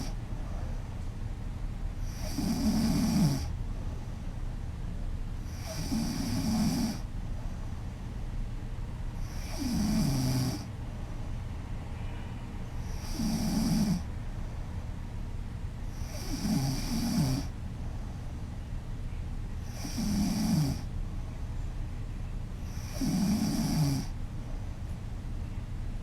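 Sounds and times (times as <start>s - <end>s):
woman snoring loudly: 2.0s - 3.5s, 5.5s - 7.0s, 9.2s - 10.7s, 12.8s - 14.0s, 15.9s - 17.5s, 19.7s - 20.9s, 22.7s - 24.1s.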